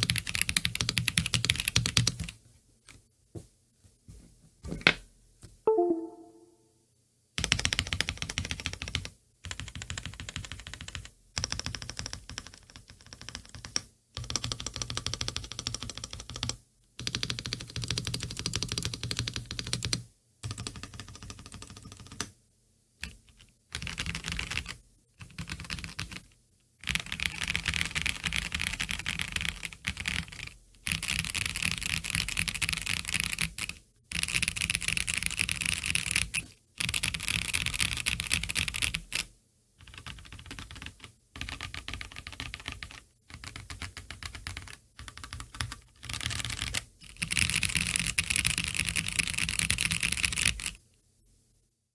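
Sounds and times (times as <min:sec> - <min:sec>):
mechanical keyboard typing: 0:00.0 - 0:02.3, 0:08.2 - 0:20.0, 0:23.8 - 0:26.2, 0:26.9 - 0:36.3, 0:39.8 - 0:50.8.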